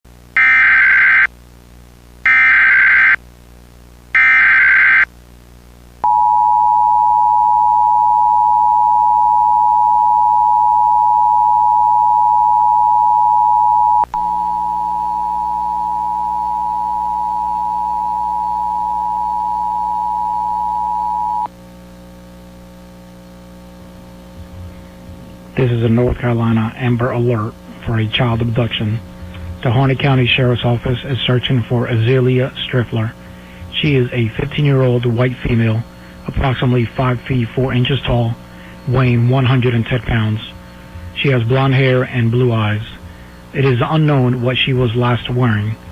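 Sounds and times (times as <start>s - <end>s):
data burst tones: 2.3s - 3.2s, 4.2s - 5.1s
two-tone attention signal: 6.0s - 21.5s
low hum: 6.0s - 45.9s.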